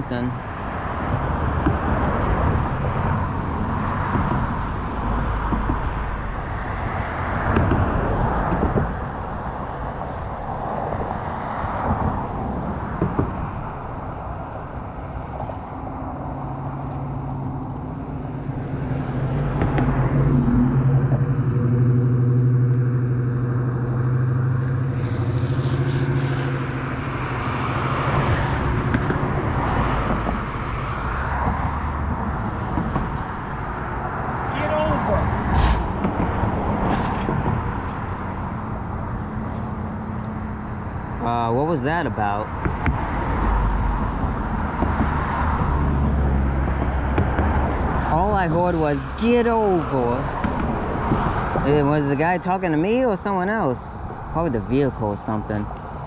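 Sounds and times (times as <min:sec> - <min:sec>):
rumbling outdoor noise: 0:00.0 - 0:56.0
vehicle engine running: 0:45.6 - 0:52.1.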